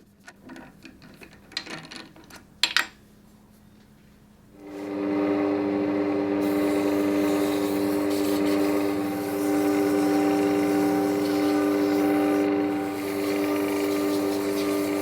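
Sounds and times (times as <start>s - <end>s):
lathe motor humming: 4.6s - 15.0s.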